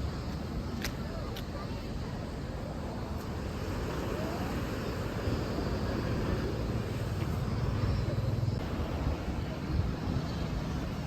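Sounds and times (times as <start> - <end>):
traffic rumble and hiss: 0.0 - 11.0.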